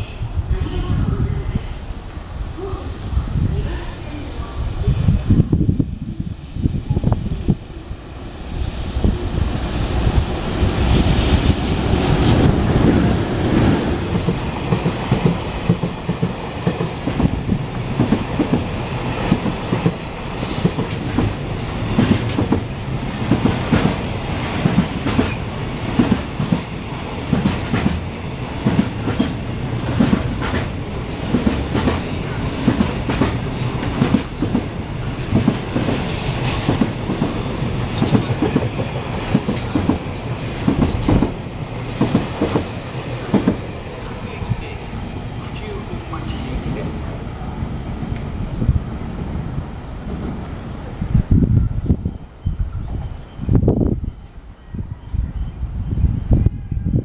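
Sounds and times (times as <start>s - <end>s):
freight train rumbling: 0.0s - 57.0s
wheels clacking over rail joints: 20.6s - 35.9s.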